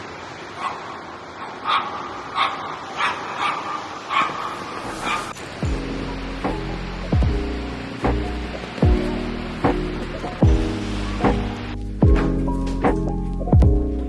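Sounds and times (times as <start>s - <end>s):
steady outdoor hiss: 0.0s - 14.0s
dog barking: 0.5s - 5.4s
music: 5.6s - 14.0s.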